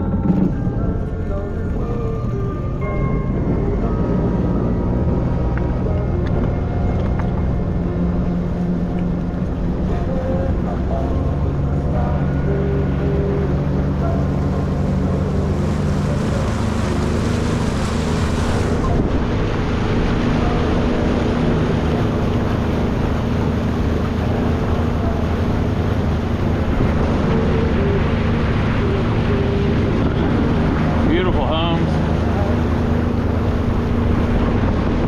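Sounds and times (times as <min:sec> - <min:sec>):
motorboat engine running: 0:00.0 - 0:35.0
water rushing past hull: 0:00.0 - 0:35.0
wind buffeting microphone: 0:15.3 - 0:35.0.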